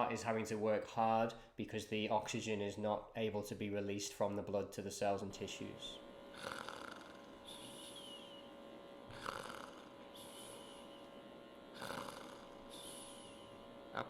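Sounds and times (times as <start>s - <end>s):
faint steady hum: 0.0s - 14.0s
man snoring: 6.3s - 8.5s, 9.1s - 11.1s, 11.7s - 14.0s
hissing breath: 6.3s - 14.0s.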